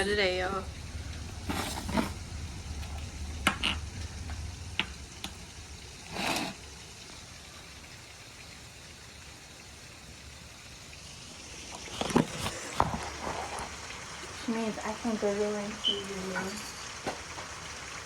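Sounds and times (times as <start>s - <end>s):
steady rain falling: 0.0s - 18.0s
drip-like ticks: 2.2s - 6.0s.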